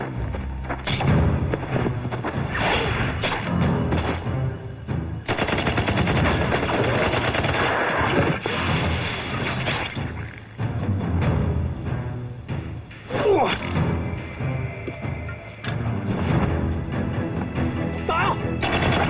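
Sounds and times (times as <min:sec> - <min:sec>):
dramatic background music: 0:00.0 - 0:19.0
rapid gunfire: 0:05.3 - 0:08.4, 0:18.6 - 0:19.0.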